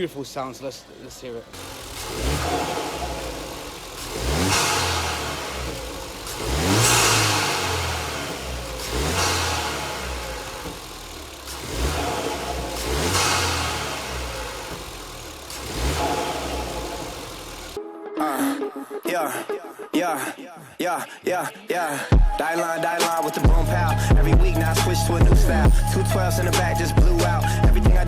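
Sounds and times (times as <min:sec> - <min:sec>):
car engine revving: 0:00.0 - 0:17.8, 0:23.4 - 0:28.0.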